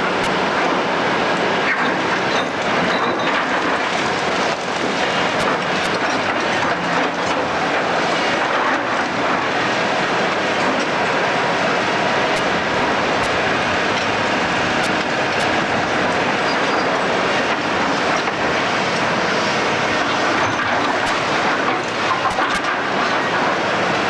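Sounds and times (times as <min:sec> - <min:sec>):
demolition machinery din: 0:00.0 - 0:24.0.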